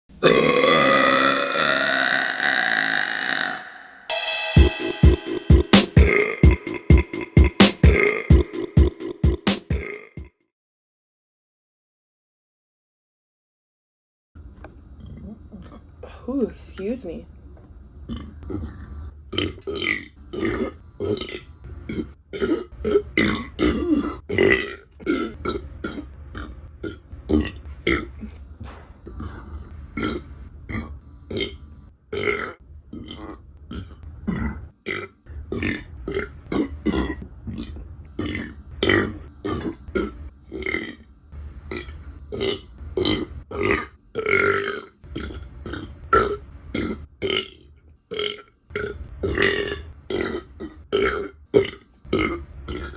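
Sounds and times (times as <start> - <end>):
woman burping: 0.2 - 4.0.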